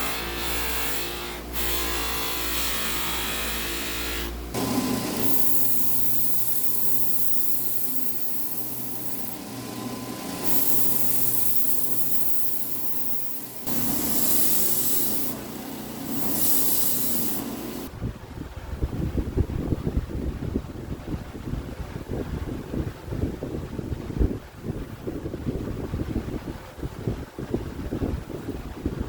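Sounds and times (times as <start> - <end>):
steady hum: 0.0 - 29.0
sanding hiss on wood: 10.2 - 17.9.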